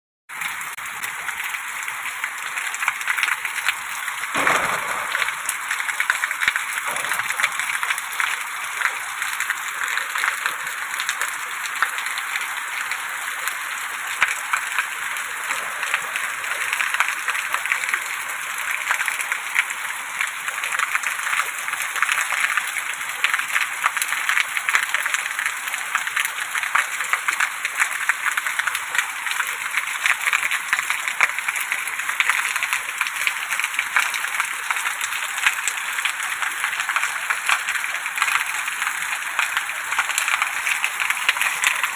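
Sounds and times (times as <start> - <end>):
rain drop hits: 0.3 - 13.6, 30.5 - 41.9
steady rain: 0.3 - 41.9.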